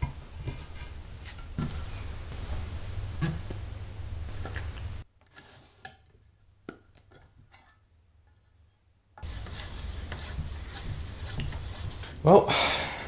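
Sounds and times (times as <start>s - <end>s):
steady low hum: 0.0s - 5.0s.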